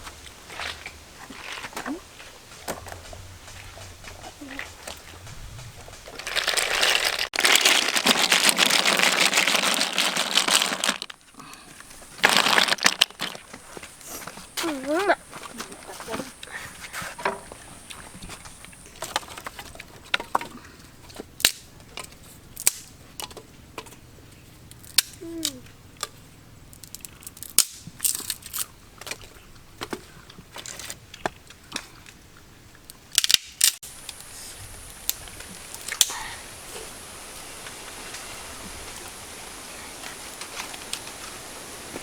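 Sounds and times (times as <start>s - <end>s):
steady hiss: 0.0s - 19.3s, 33.6s - 42.0s.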